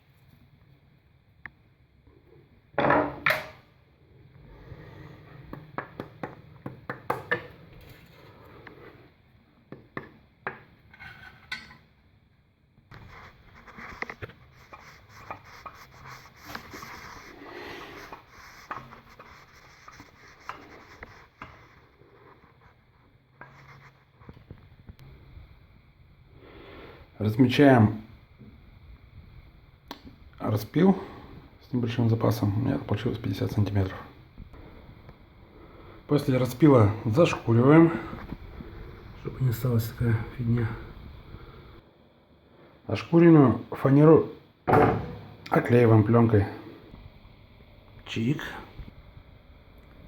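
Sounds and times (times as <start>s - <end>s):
scraping and rubbing: 12.9s - 24.7s.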